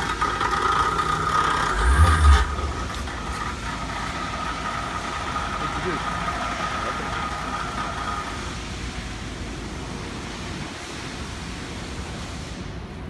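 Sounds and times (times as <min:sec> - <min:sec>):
vibratory machine humming: 0:00.8 - 0:06.0
high whine: 0:01.4 - 0:04.4.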